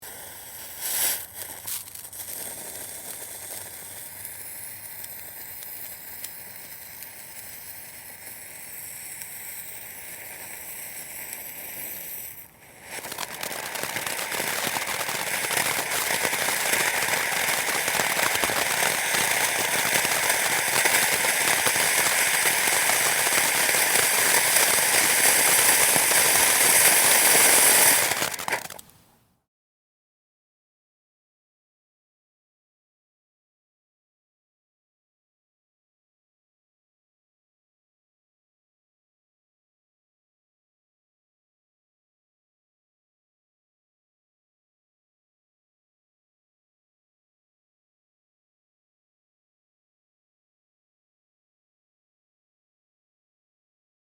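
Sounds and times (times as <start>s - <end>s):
firework fountain crackling hiss: 0.0s - 29.0s.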